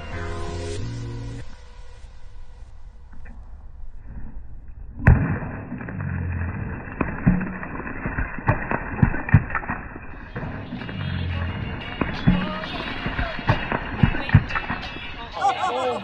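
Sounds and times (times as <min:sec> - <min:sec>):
sledgehammer blow: 0:00.0 - 0:09.7.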